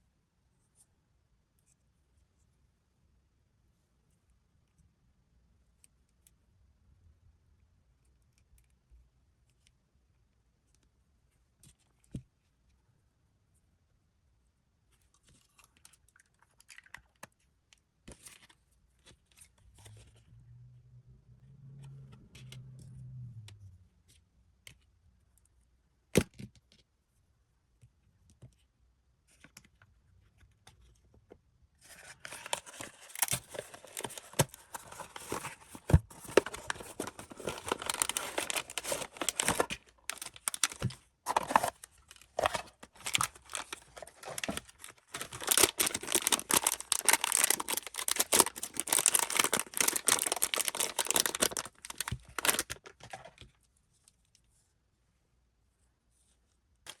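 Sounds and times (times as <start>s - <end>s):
plastic wrapper crinkling and tearing: 31.9s - 53.2s
light taps and clicks on packaging: 32.0s - 53.6s.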